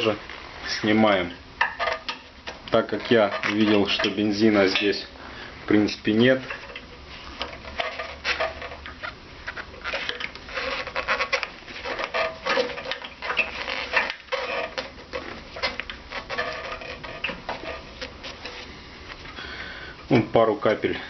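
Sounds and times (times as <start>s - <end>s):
hand tools clicking and scraping: 1.6s - 5.0s, 6.2s - 19.4s.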